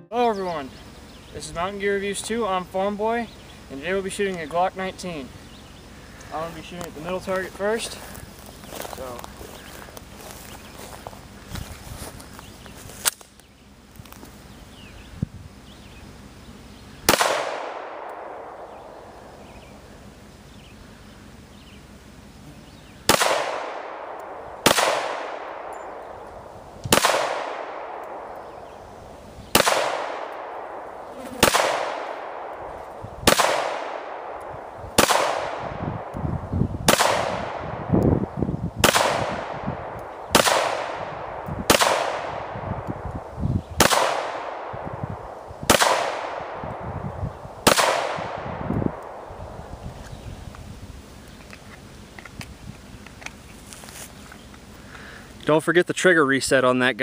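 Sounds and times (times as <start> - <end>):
pistol shots echoing: 17.0 - 19.5, 23.0 - 28.8, 29.5 - 36.2, 36.8 - 37.9, 38.8 - 42.9, 43.8 - 46.8, 47.6 - 49.3.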